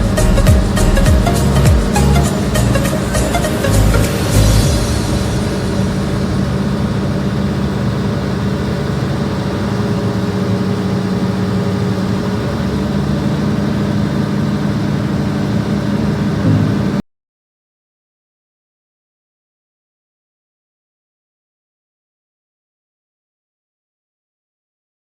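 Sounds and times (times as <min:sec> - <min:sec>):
heavy diesel engine running: 0:00.0 - 0:17.0.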